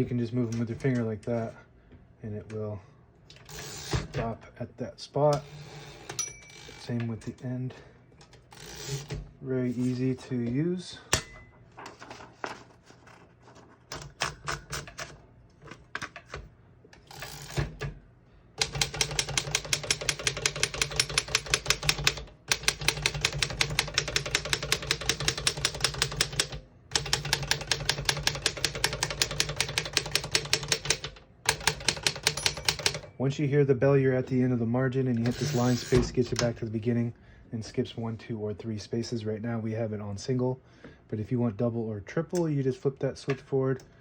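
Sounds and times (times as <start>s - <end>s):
typewriter key strikes: 18.6s - 33.1s.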